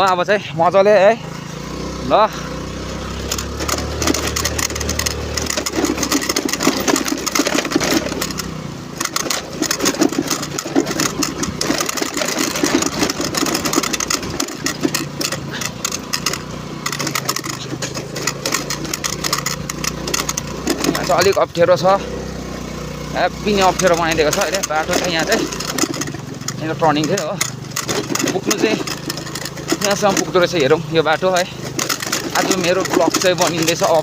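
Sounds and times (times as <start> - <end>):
small motorbike engine running: 0.0 - 34.0
clicks and knocks: 3.2 - 21.4, 23.7 - 30.4.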